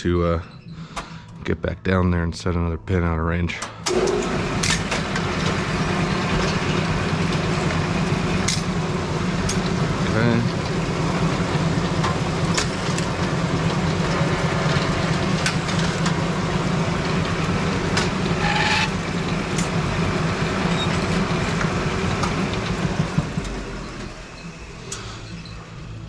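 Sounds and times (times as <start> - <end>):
low mechanical hum: 2.6 - 26.0
mechanical clanks and knocks: 17.2 - 20.0.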